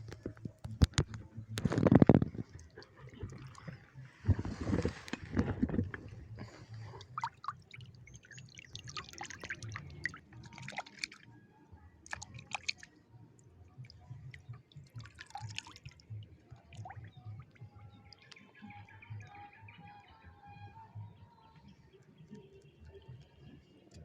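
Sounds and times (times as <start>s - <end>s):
water splashing and dripping: 0.0s - 11.3s, 12.0s - 12.9s, 13.8s - 18.4s.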